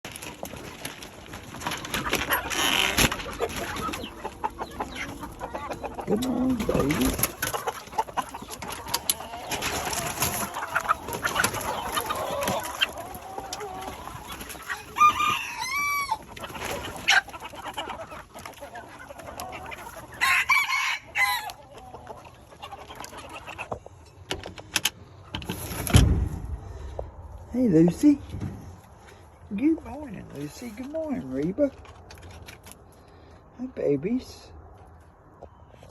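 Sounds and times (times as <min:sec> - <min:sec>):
chickens clucking: 0:00.1 - 0:35.9
rooster crowing: 0:14.8 - 0:16.2, 0:20.2 - 0:21.6.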